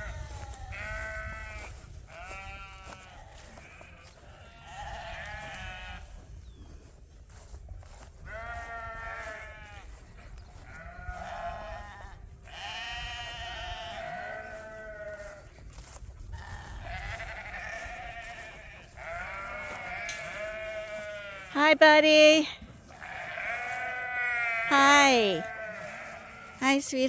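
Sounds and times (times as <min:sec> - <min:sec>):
lambs bleating: 0:00.0 - 0:06.1, 0:08.3 - 0:10.0, 0:10.6 - 0:15.5, 0:16.4 - 0:27.0.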